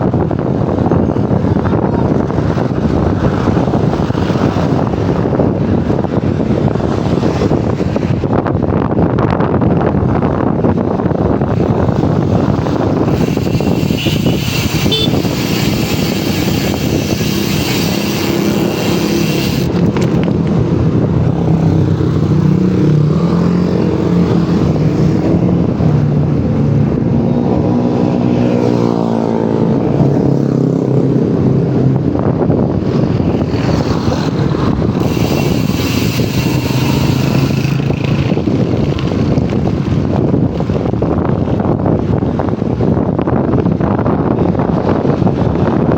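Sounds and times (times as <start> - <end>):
wind noise on microphone: 0.0 - 45.9
bicycle hub ticking: 12.4 - 20.7, 34.3 - 40.9.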